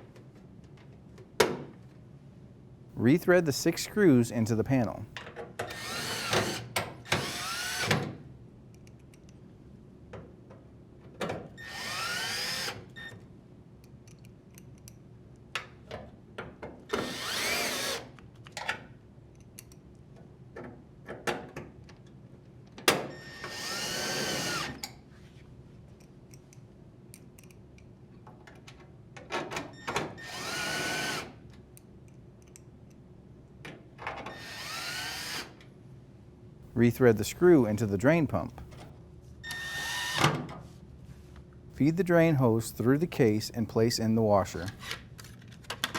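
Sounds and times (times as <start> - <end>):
drill driver driving screws: 5.6 - 8.1, 11.6 - 12.9, 16.9 - 18.1, 23.2 - 24.8, 30.2 - 31.3, 34.2 - 35.5, 39.5 - 40.4.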